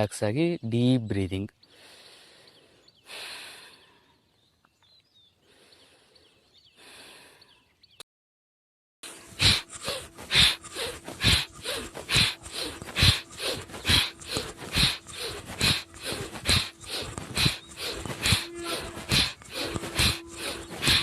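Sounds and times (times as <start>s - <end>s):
forceful rhythmic breathing: 1.7s - 4.1s, 5.4s - 7.5s, 9.0s - 21.0s.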